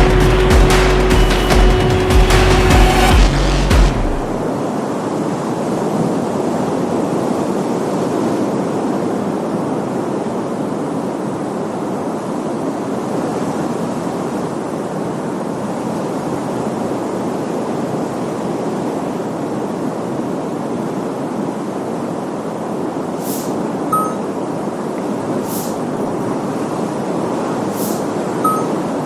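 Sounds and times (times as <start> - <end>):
ocean waves breaking: 20.9 - 29.0.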